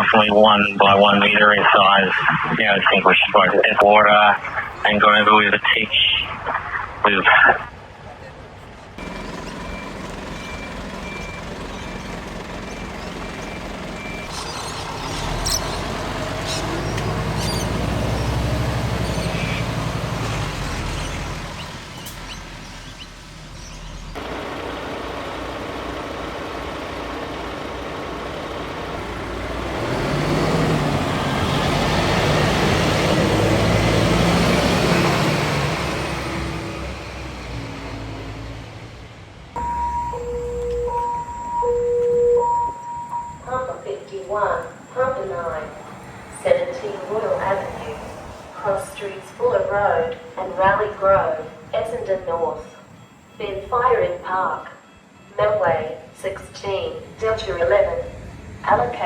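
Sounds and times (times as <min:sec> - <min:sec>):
fire truck diesel engines passing: 0:00.0 - 0:59.0
short high beeps: 0:39.6 - 0:43.8.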